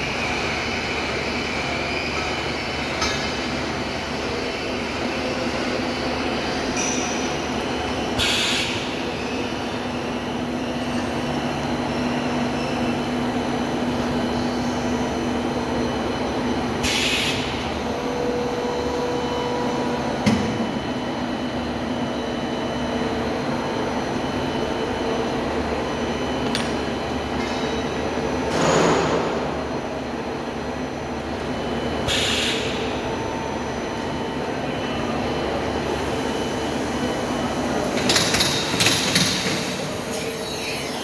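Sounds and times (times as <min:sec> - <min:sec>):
punching machine humming: 0:23.1 - 0:33.8.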